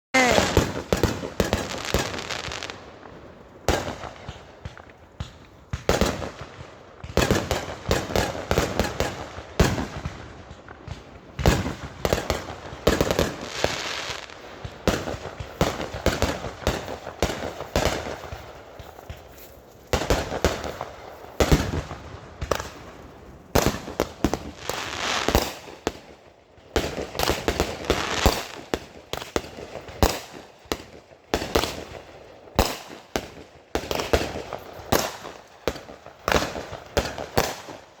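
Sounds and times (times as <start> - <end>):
fireworks bangs and crackling: 0.2 - 38.0.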